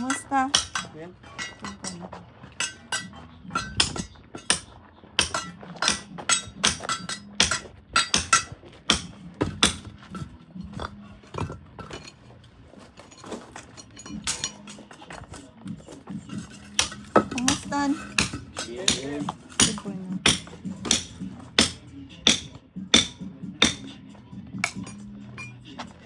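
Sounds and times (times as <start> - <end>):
hand tools knocking: 0.0 - 12.3, 13.0 - 23.9, 24.6 - 25.6
metallic clinks: 13.0 - 15.0.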